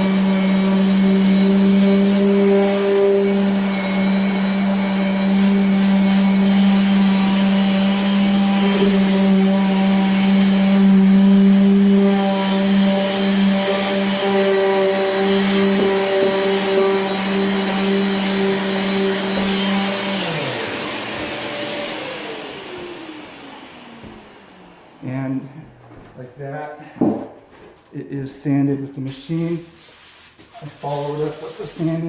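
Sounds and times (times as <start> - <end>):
electric sander running: 0.0 - 25.0.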